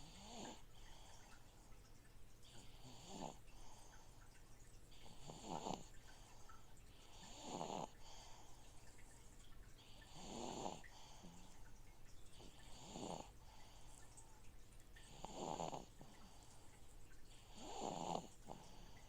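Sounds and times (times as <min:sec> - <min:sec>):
baby snoring faintly: 0:00.0 - 0:01.4, 0:02.4 - 0:04.2, 0:04.9 - 0:08.7, 0:09.8 - 0:11.5, 0:12.3 - 0:14.0, 0:15.0 - 0:19.0
aquarium filter hum: 0:00.0 - 0:19.0.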